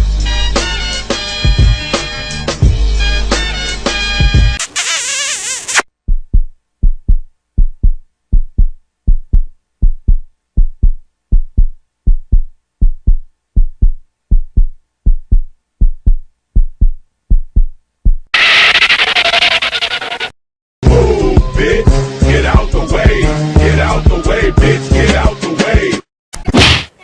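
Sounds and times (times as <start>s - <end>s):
heartbeat thumps: 6.0s - 18.3s.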